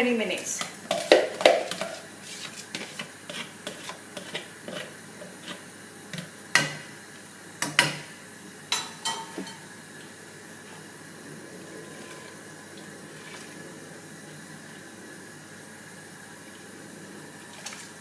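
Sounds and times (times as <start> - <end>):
spoon clinking against pot: 8.7 - 9.6.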